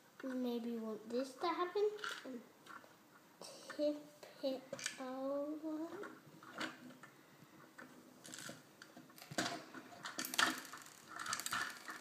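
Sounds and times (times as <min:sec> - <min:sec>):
plastic toy pieces clattering: 0:02.0 - 0:02.3, 0:09.2 - 0:12.0.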